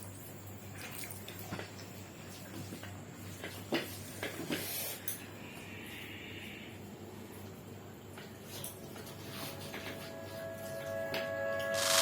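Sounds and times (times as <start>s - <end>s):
soft squishes of food mixed by hand: 0.0s - 6.1s
low steady hum: 0.0s - 12.0s.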